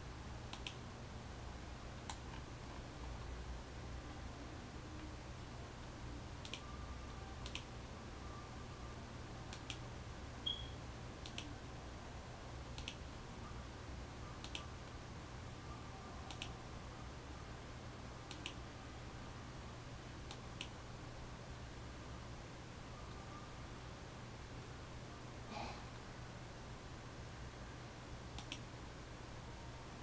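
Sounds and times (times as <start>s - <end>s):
low electrical hum: 0.0s - 30.0s
computer mouse clicking: 0.5s - 0.8s, 2.0s - 2.4s, 6.4s - 6.7s, 7.4s - 7.7s, 9.5s - 9.8s, 11.2s - 11.5s, 12.7s - 13.0s, 14.4s - 14.7s, 16.3s - 16.6s, 18.3s - 18.6s, 20.3s - 20.8s, 28.3s - 28.7s
high beep: 10.4s - 10.8s.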